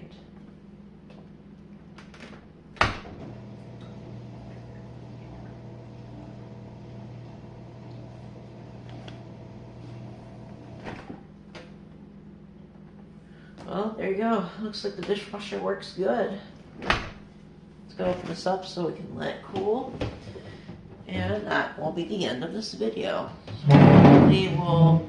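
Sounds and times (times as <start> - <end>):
dishwasher drain pump humming: 2.6 - 11.7, 23.3 - 25.0.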